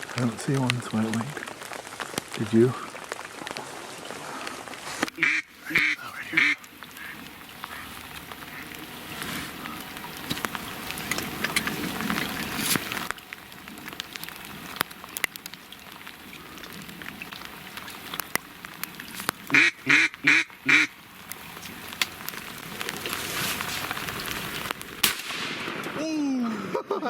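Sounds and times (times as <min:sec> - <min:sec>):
rain pattering and dripping: 0:00.0 - 0:27.0
duck quacking: 0:05.2 - 0:08.7, 0:19.5 - 0:20.9.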